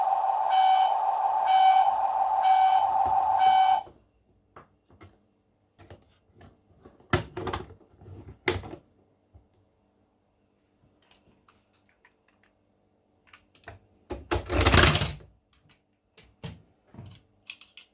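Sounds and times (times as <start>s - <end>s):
buzzing toy alarm tone: 0.0s - 3.8s.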